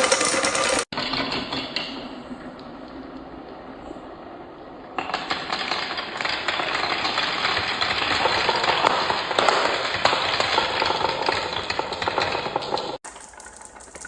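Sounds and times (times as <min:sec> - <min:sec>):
marbles rattling down a track: 0:00.0 - 0:00.9, 0:05.1 - 0:14.0.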